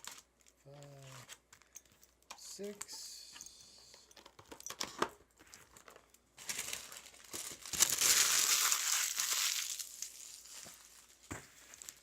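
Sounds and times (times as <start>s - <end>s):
plastic wrappers crinkling: 0.0s - 2.9s, 3.8s - 12.0s.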